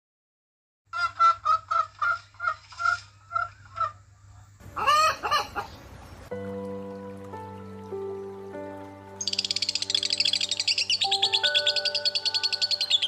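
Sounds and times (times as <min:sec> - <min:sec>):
chicken clucking: 0:01.0 - 0:05.8
chicken call rising and falling: 0:04.8 - 0:05.7, 0:09.4 - 0:13.0
music: 0:06.3 - 0:13.0.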